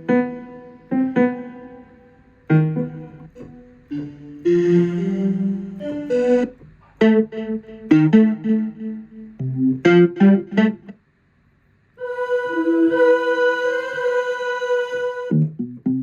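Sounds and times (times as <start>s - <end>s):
synthesizer notes and chords: 0.0s - 11.1s.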